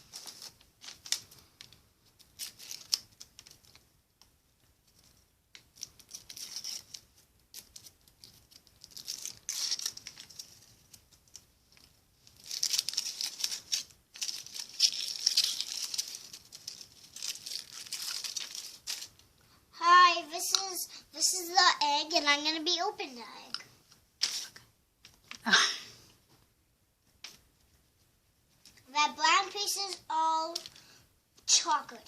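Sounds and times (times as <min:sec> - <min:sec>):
foil wrapper crinkling: 0:02.2 - 0:03.8, 0:05.7 - 0:19.3.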